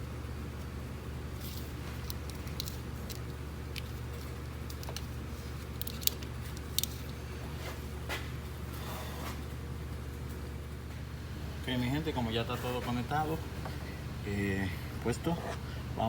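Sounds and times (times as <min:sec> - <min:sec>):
steady low hum: 0:00.0 - 0:16.0
plastic clips clicking: 0:05.8 - 0:07.2.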